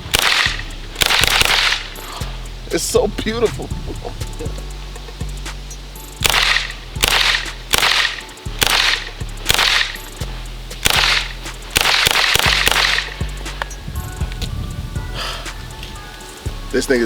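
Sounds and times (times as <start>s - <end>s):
carbine gunshots with echo: 0.0s - 2.2s, 6.2s - 13.6s.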